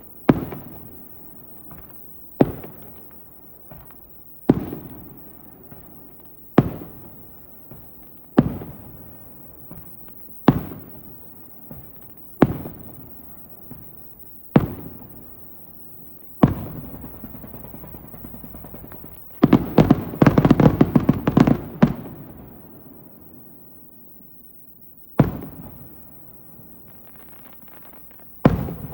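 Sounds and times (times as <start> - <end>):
firework shells bursting with booms: 0.0 - 28.9
fast firework crackling: 16.2 - 22.5, 26.8 - 28.9.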